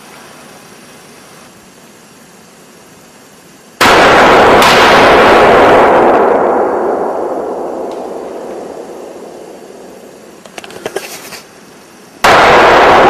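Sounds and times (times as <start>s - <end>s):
rifle shot: 3.8s - 10.6s, 12.2s - 13.0s
rolling echo: 3.8s - 10.6s.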